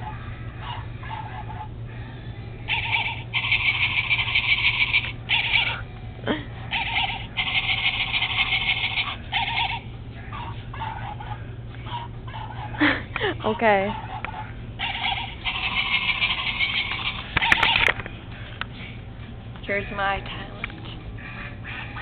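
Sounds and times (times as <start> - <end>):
toy animal sounds: 2.7 - 5.8, 6.7 - 12.8, 13.9 - 18.0.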